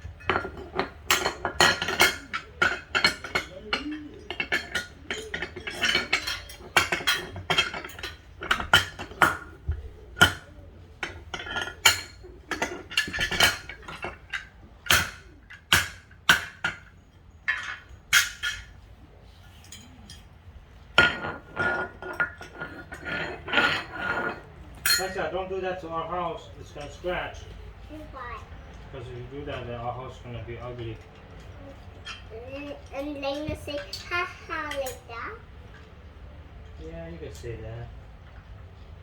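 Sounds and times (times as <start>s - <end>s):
metal parts clinking: 0.0s - 18.9s, 21.0s - 25.3s.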